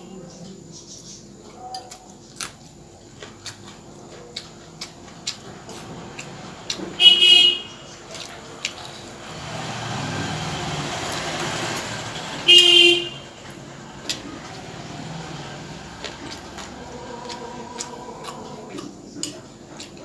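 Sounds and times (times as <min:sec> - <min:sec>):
vehicle horn beep: 0:07.0 - 0:07.9, 0:11.8 - 0:13.5
vehicle passing by: 0:08.6 - 0:18.7.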